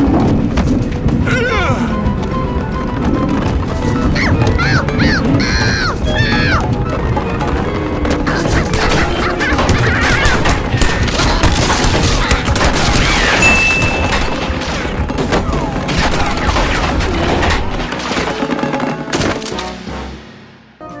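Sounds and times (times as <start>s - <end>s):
cartoon music: 3.8s - 12.6s.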